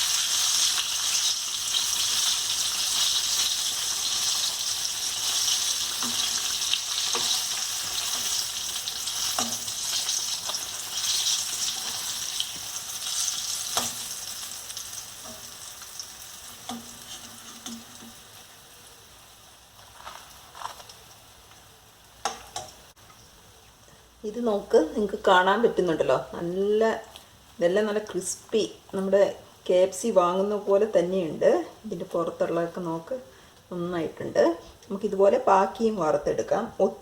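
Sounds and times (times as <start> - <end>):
chicken deep-frying in oil: 0.0 - 26.3
metal utensil clicking on pan: 5.9 - 8.5, 9.1 - 12.5, 13.4 - 14.4, 16.6 - 18.2.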